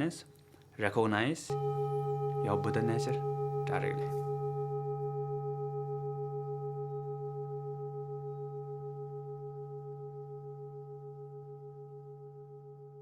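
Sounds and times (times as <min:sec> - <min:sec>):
singing bowl ringing: 0:01.5 - 0:13.0.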